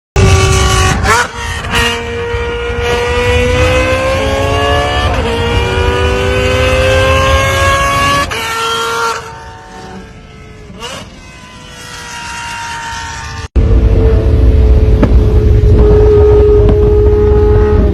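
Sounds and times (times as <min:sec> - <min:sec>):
sports car engine accelerating: 0:00.2 - 0:17.9.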